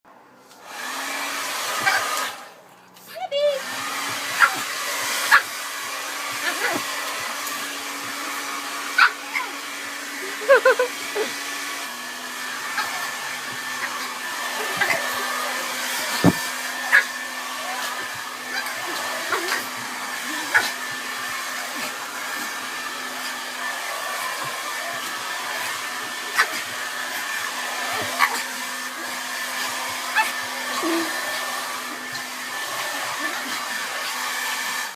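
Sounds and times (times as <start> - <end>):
hair dryer blowing: 0.5 - 34.9.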